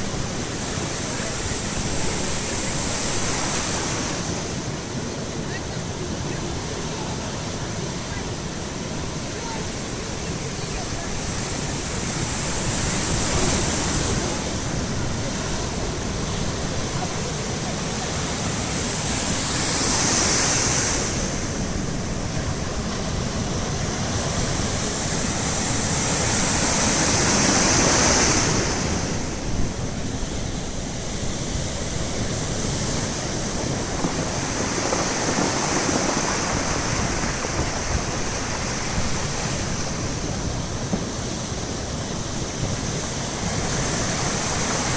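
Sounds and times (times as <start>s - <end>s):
waves breaking on shore: 0.0s - 44.9s
wind buffeting microphone: 0.0s - 44.9s.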